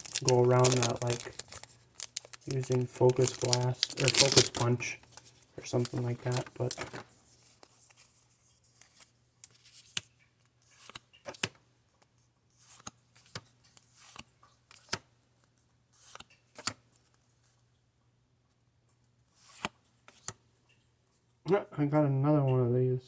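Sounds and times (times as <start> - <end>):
cards sliding swishes: 19.4 - 20.4.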